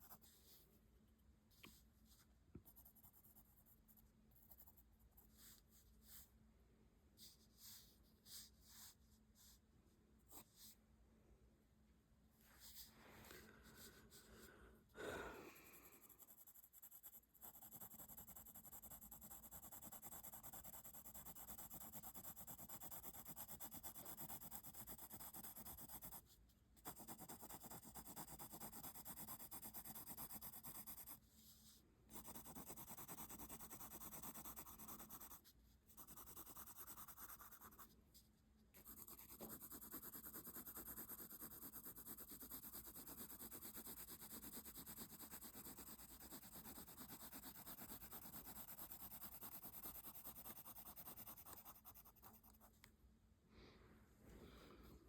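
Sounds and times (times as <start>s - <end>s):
pencil scratching on paper: 15.8s - 38.0s, 38.7s - 52.8s.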